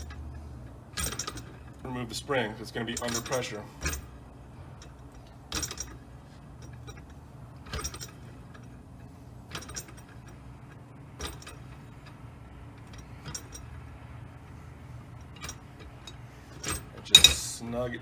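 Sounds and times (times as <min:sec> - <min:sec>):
metal parts clinking on a rod: 0:00.0 - 0:01.6, 0:02.8 - 0:04.1, 0:04.8 - 0:06.0, 0:06.6 - 0:08.7, 0:09.5 - 0:10.4, 0:12.8 - 0:13.7, 0:15.2 - 0:17.5
low steady hum: 0:00.0 - 0:18.0.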